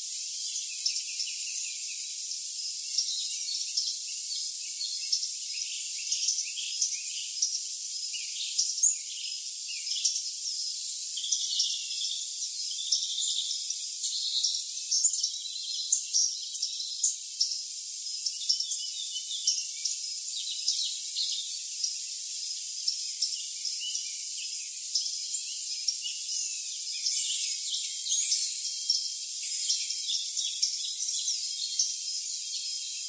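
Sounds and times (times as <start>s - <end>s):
crickets trilling: 0.0s - 33.0s
songbirds chirping: 22.9s - 33.0s.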